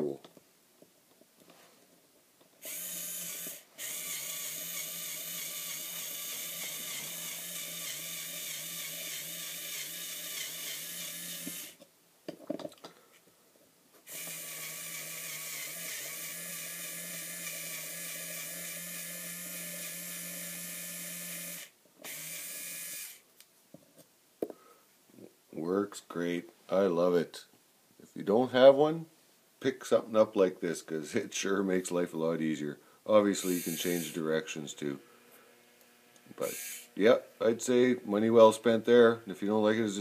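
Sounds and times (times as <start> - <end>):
power screwdriver motor whining: 2.6 - 11.8, 14.1 - 23.2, 33.4 - 34.2, 35.3 - 37.0.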